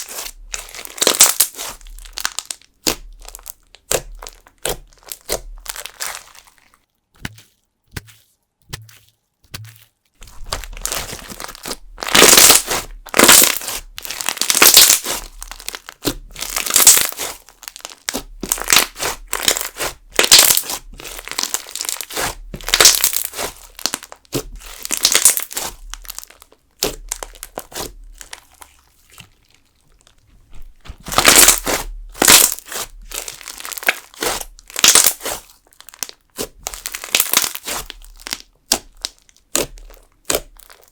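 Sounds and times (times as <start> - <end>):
slime crunching and crinkling: 0.0 - 40.9.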